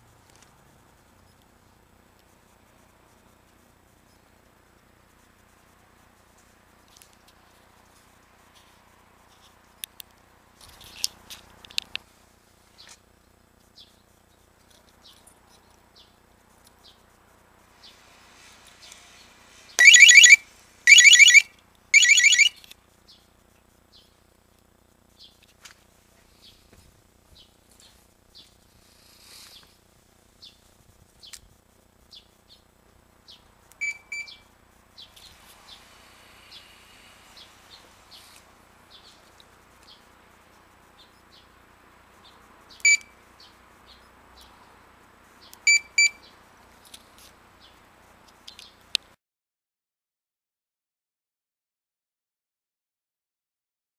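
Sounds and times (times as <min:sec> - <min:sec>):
alarm chirps: 0:19.8 - 0:22.6, 0:33.8 - 0:34.4, 0:42.8 - 0:43.2, 0:45.7 - 0:46.2
motorcycle alarm siren bursts: 0:19.8 - 0:22.6, 0:45.7 - 0:46.2.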